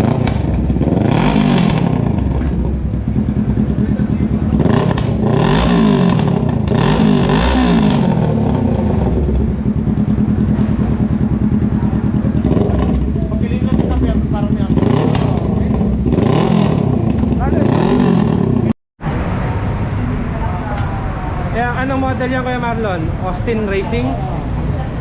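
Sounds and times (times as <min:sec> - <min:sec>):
motorcycle engine idling: 0:00.0 - 0:18.7
motorcycle throttle blips: 0:00.0 - 0:18.8.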